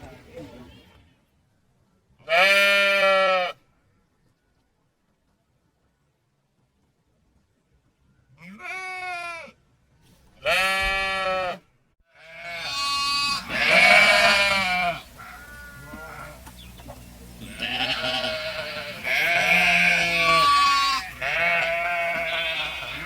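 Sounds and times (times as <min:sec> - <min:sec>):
sheep bleating: 0:02.2 - 0:03.6, 0:08.4 - 0:09.6, 0:10.4 - 0:23.0.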